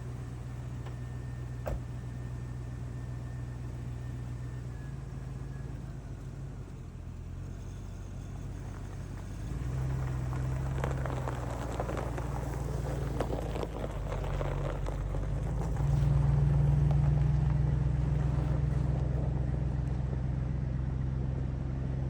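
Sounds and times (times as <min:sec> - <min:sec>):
pickup truck engine and road hum: 0:00.0 - 0:22.0
rapid crackling and rattling: 0:08.8 - 0:20.0.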